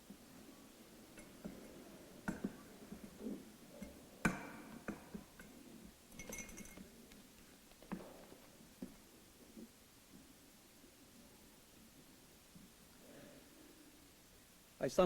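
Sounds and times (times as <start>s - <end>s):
short ringing clink: 6.2s - 6.8s.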